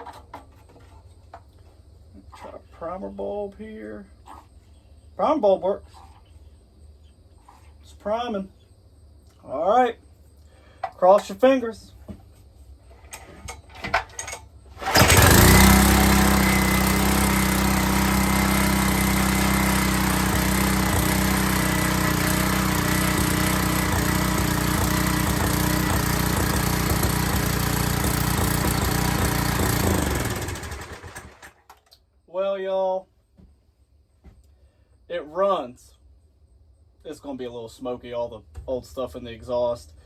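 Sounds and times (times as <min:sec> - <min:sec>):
small gas engine running: 0:14.2 - 0:31.6.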